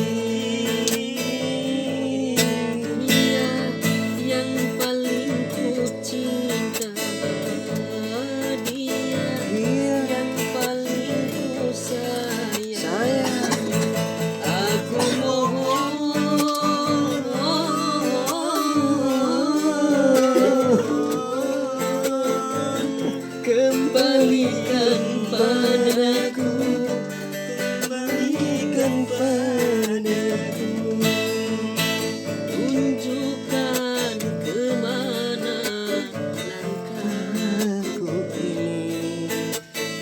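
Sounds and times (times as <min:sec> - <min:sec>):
guitar sliding melody: 0:00.0 - 0:40.0.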